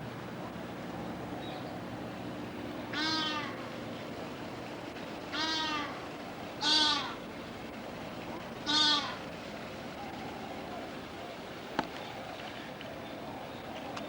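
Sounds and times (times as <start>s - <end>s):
steady background hum: 0.0s - 14.0s
animal short pitched cries: 2.9s - 3.6s, 5.3s - 6.0s, 6.6s - 7.2s, 8.7s - 9.2s.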